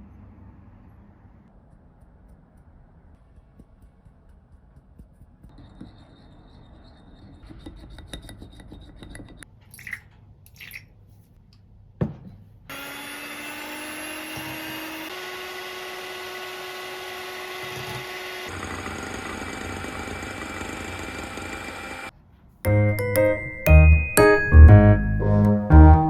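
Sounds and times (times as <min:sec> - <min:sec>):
background music with held tones: 0:22.7 - 0:26.0.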